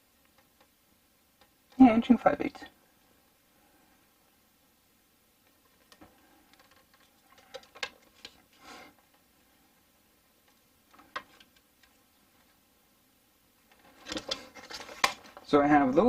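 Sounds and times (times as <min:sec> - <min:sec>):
small objects clicking and tapping: 0:00.2 - 0:01.8, 0:05.4 - 0:08.4, 0:10.4 - 0:12.6.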